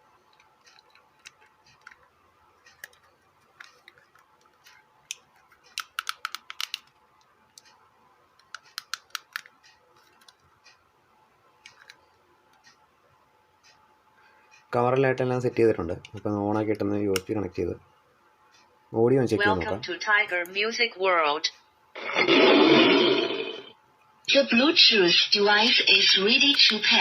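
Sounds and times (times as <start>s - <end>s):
plastic casing clicks and taps: 5.7s - 6.9s.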